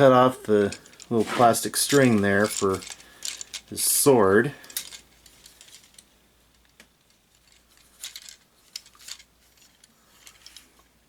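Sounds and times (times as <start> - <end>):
plastic action figure clicks and rustling: 0.5 - 11.0.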